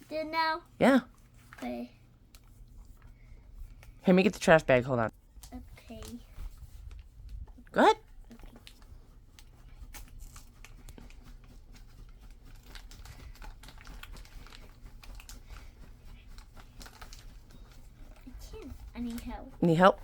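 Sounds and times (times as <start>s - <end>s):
gift wrapping crinkling: 5.3s - 20.0s.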